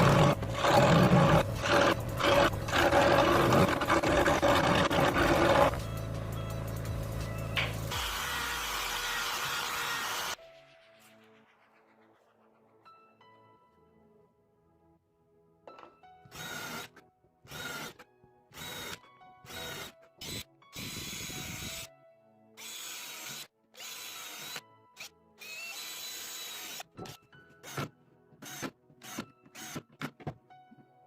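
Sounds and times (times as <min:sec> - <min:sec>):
background music with held tones: 0:05.5 - 0:09.6, 0:10.3 - 0:31.0.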